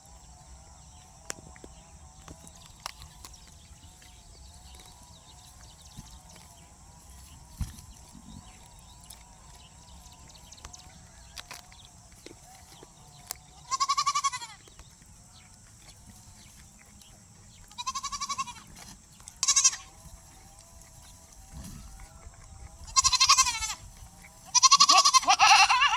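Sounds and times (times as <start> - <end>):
livestock bleating: 13.4 - 14.6, 17.7 - 18.7, 19.4 - 20.0, 21.5 - 25.9.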